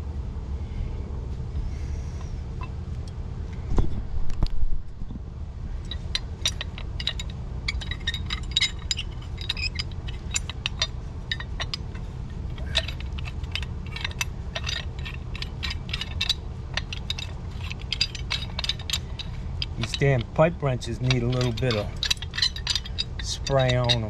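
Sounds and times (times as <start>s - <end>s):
steady low hum: 0.0s - 24.0s
pipe wrenches clicking on fittings: 5.8s - 24.0s.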